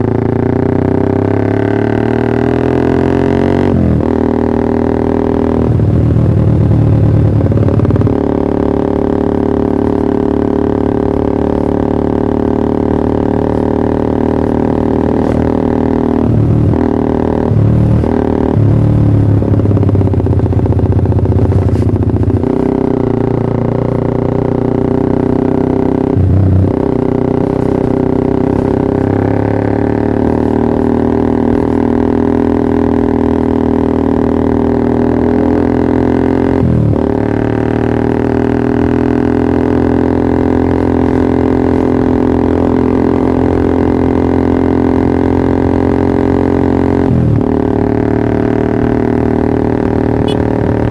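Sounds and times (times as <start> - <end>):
motorcycle engine idling: 17.5 - 25.3.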